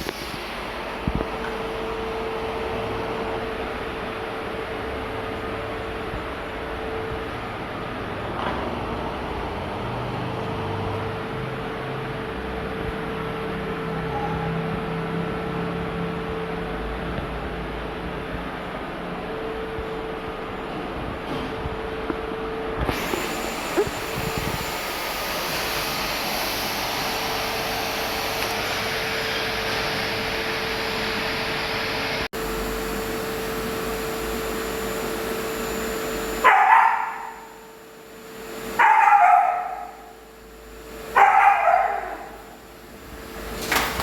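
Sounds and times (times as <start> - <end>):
vacuum cleaner humming: 0.0 - 14.0, 21.0 - 44.0
dog calling loudly: 36.4 - 37.5, 38.8 - 40.1, 41.2 - 42.4.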